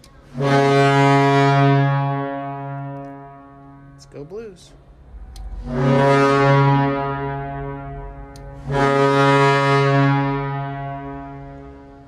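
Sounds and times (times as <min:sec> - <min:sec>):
goal horn blasts: 0:00.3 - 0:04.2, 0:05.5 - 0:12.0.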